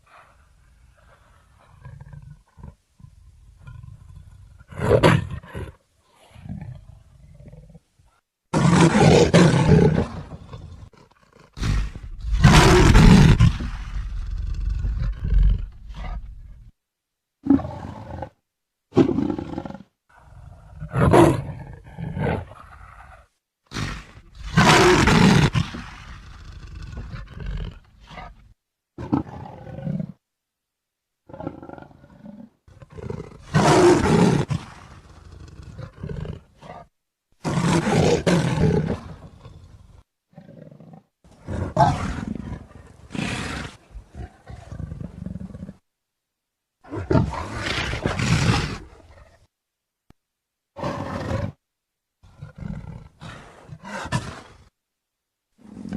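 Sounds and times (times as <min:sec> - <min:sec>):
leopard roaring: 0:08.5 - 0:16.7, 0:17.4 - 0:28.4, 0:31.3 - 0:45.8, 0:46.8 - 0:49.5, 0:50.8 - 0:51.6, 0:52.2 - 0:54.7.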